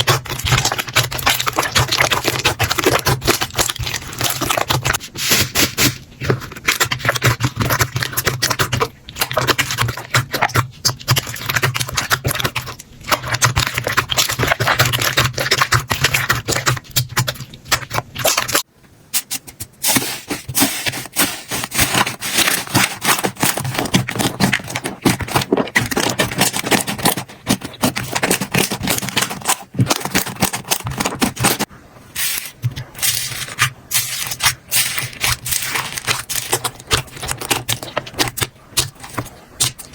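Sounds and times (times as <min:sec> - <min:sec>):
slime crackling and popping: 0:00.0 - 0:05.9, 0:32.7 - 0:39.9.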